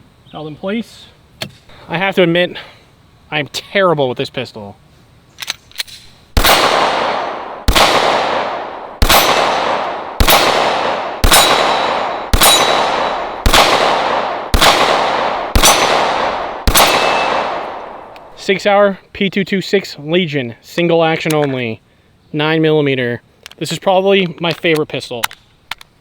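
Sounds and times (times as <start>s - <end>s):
pistol shots: 6.4s - 18.3s
steel targets clanging: 11.3s - 13.4s, 16.7s - 17.4s.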